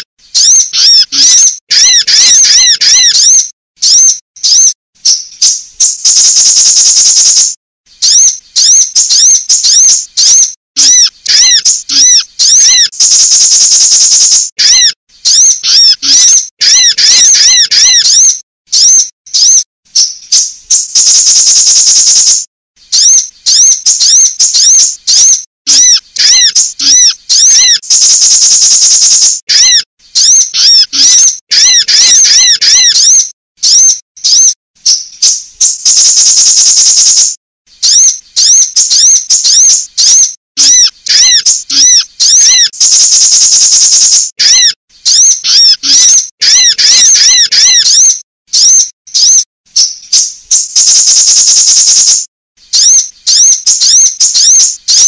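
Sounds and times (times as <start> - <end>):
buzzy bird trill: 0.0 - 55.0
high arching bird chirps: 0.0 - 55.0.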